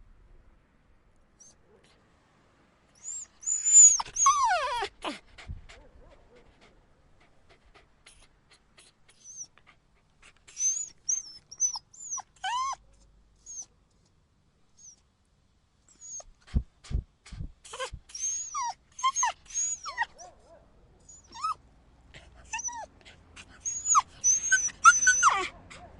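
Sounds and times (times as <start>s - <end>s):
dog yelping and whimpering: 3.0s - 5.9s, 10.3s - 12.8s, 17.7s - 20.4s, 21.1s - 21.6s, 22.2s - 25.9s.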